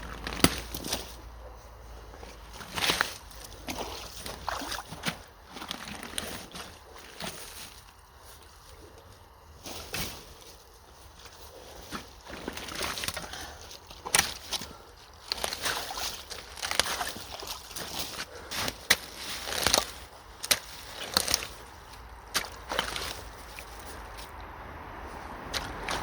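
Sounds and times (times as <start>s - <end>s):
sticks cracking and snapping: 0.0s - 1.2s, 15.3s - 21.7s
water sloshing: 2.2s - 7.5s, 15.2s - 24.4s, 25.0s - 26.0s.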